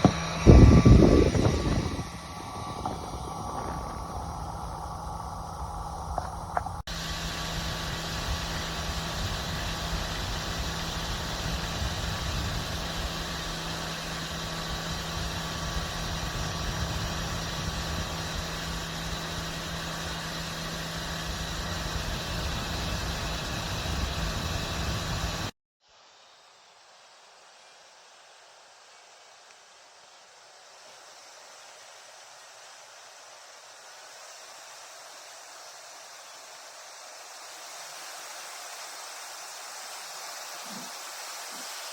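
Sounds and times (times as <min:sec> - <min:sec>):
portable fan whirring: 0:00.0 - 0:25.5.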